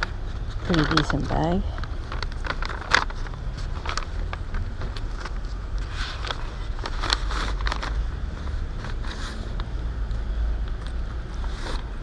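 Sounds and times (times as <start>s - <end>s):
bag rustling and clicking: 0.0s - 9.7s.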